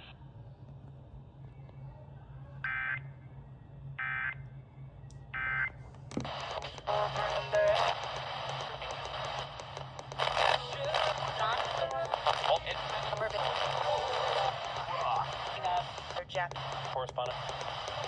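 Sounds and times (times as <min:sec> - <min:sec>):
broadcast programme audio: 0:06.3 - 0:18.0.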